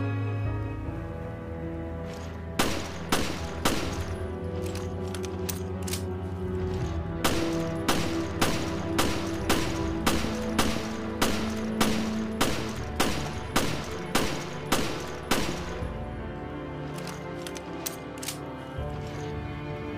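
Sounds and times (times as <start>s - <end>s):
background music: 0.0s - 19.9s
pistol shots: 2.6s - 4.1s, 7.2s - 15.8s.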